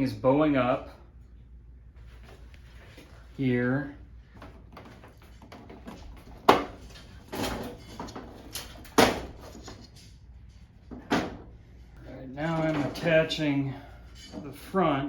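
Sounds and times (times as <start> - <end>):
metal panels rattling and scraping: 4.3 - 14.9
metal cage clanking: 4.8 - 11.6, 12.4 - 14.8.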